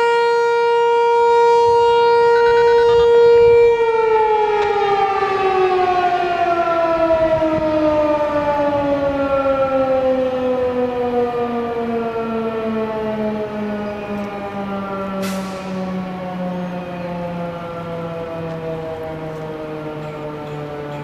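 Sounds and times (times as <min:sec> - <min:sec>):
warning siren winding down: 0:00.0 - 0:21.0.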